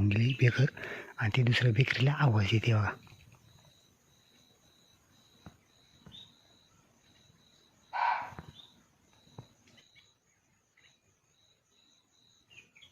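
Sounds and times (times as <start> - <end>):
faint insects chirping: 0.0 - 12.9
deer barking: 7.9 - 8.6.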